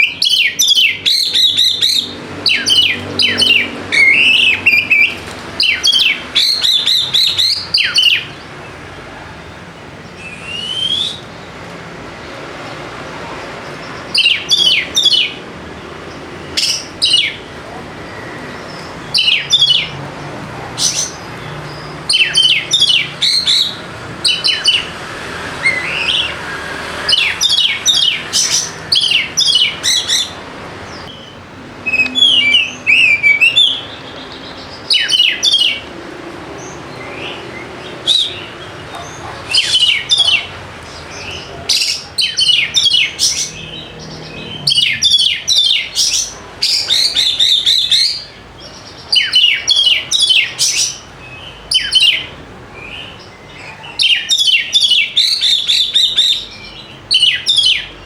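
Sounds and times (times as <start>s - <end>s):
bird singing chirps and whistles: 0.0s - 8.4s, 10.1s - 11.4s, 14.0s - 15.4s, 16.5s - 17.5s, 18.5s - 19.9s, 20.8s - 24.9s, 25.6s - 35.8s, 39.5s - 40.5s, 41.2s - 58.0s.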